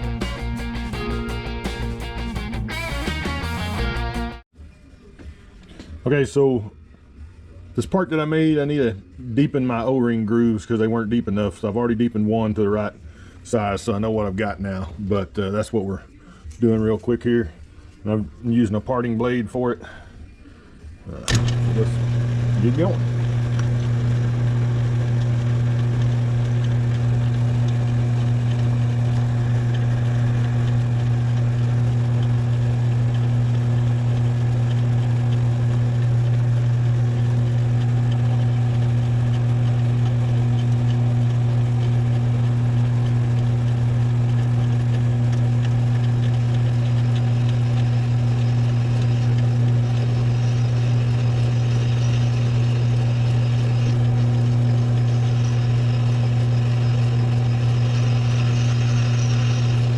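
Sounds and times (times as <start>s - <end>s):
metal lathe motor hum: 21.1s - 59.9s.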